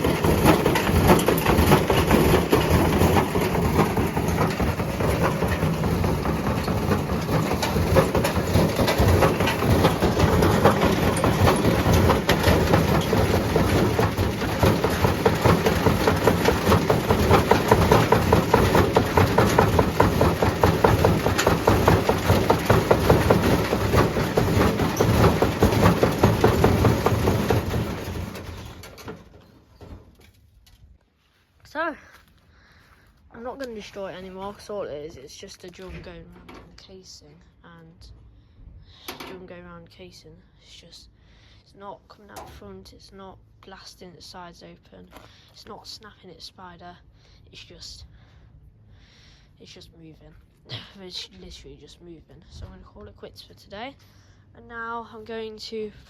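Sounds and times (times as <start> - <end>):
washing machine clattering rumble: 0.0 - 30.2.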